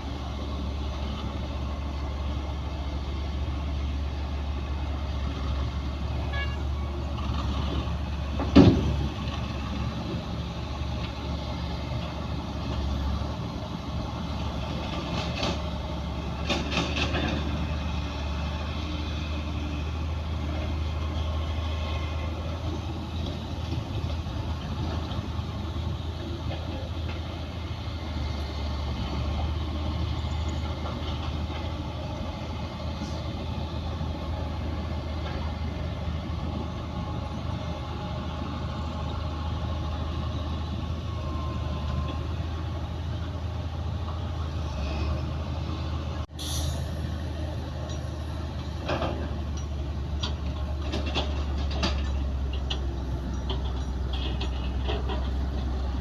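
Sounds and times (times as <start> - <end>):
heavy diesel engines running: 0.0 - 56.0.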